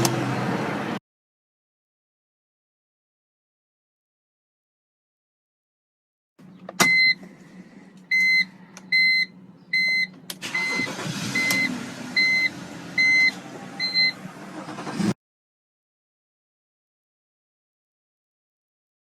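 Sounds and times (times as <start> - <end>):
electronic warning chime beeping: 8.1 - 14.2.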